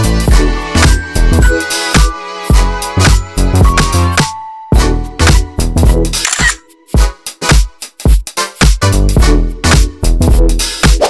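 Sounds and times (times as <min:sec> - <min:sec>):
sliding bass notes: 0:00.0 - 0:01.7.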